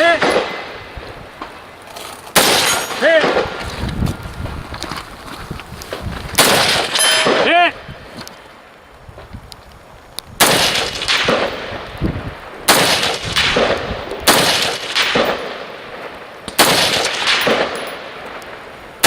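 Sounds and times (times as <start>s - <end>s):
rifle shots echoing: 0.0s - 1.0s, 2.3s - 3.6s, 6.4s - 7.9s, 10.4s - 11.9s, 12.7s - 18.7s.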